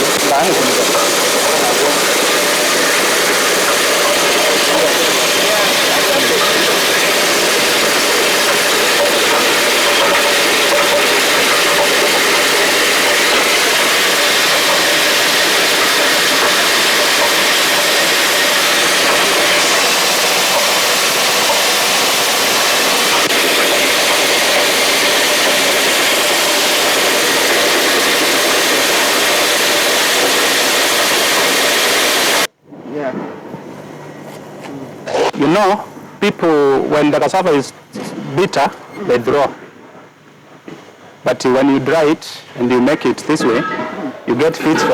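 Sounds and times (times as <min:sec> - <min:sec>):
milling machine grinding: 0:00.0 - 0:32.5.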